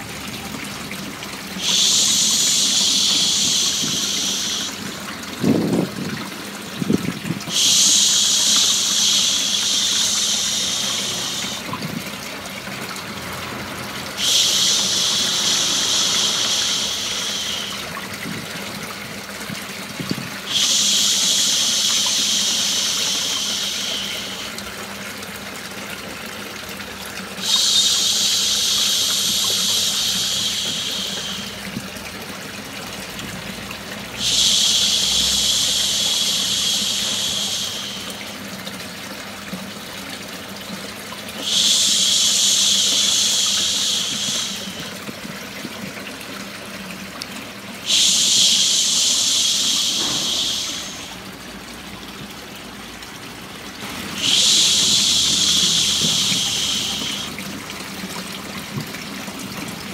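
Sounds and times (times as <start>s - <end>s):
running trickling water: 0.0s - 59.9s
person shushing: 1.6s - 4.8s, 7.5s - 11.7s, 14.2s - 17.8s, 34.2s - 38.2s, 47.9s - 51.2s, 54.1s - 57.4s.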